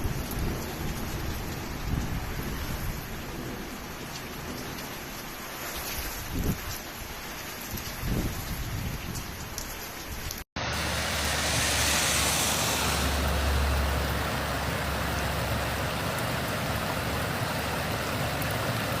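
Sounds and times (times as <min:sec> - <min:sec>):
rain falling: 0:00.0 - 0:19.0
steady rushing noise: 0:10.6 - 0:17.3
low engine hum: 0:10.6 - 0:19.0.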